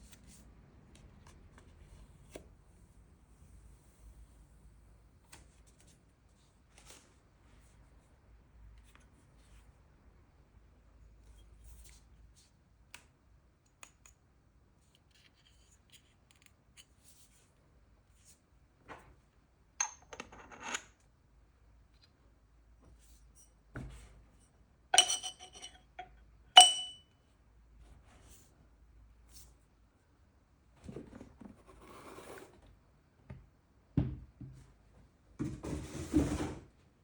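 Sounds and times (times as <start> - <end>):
hard objects clinking together: 25.0 - 26.0, 26.6 - 27.0.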